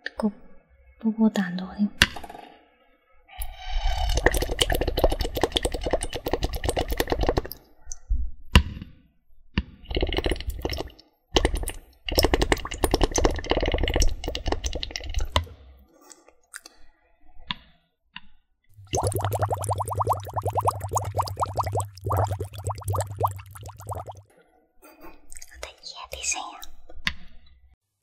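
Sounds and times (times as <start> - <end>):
bubbling through straw in water: 3.4 - 7.6, 9.8 - 15.4, 18.8 - 24.3.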